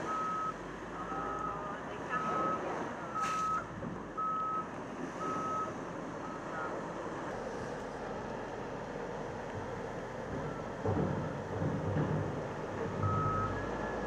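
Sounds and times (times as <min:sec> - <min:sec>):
back-up alarm beeping: 0:00.0 - 0:04.6, 0:13.0 - 0:14.0.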